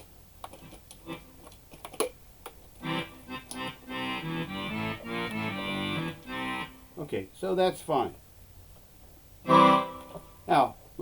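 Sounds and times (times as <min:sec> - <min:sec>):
digital accordion chords: 0:01.0 - 0:01.4, 0:02.8 - 0:07.1, 0:09.4 - 0:10.5
clicks of keys and buttons: 0:03.3 - 0:03.8, 0:04.8 - 0:05.6.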